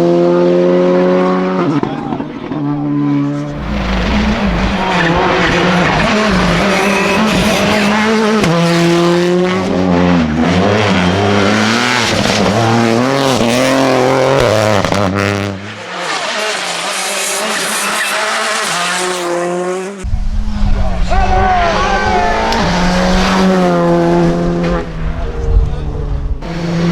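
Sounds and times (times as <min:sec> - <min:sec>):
rally car engine revving: 0:00.0 - 0:26.9
distant car: 0:01.2 - 0:26.9
tyre squeal: 0:03.5 - 0:08.2.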